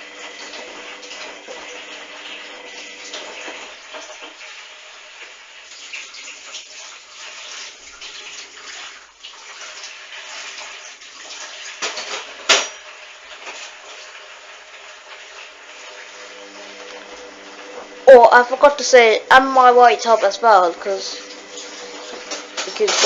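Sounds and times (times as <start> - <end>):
water sloshing in washing machine: 0.0 - 23.0
faint motor hum: 15.6 - 23.0.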